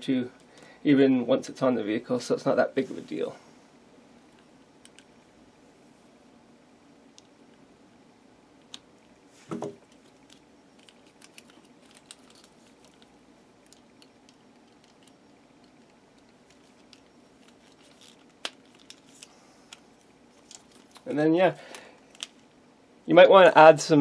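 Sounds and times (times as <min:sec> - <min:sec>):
small parts and tools clicking: 0:10.2 - 0:19.8.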